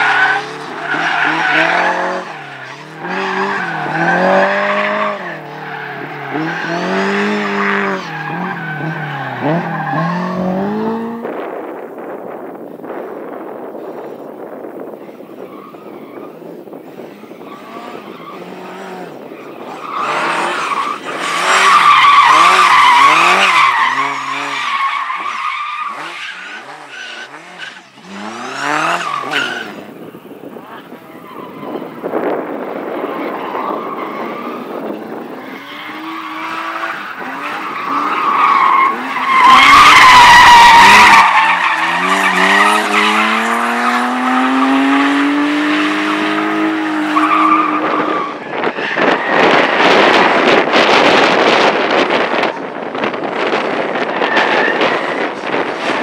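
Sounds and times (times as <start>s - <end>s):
car engine revving: 0.0s - 11.5s, 17.0s - 30.7s, 32.5s - 48.4s.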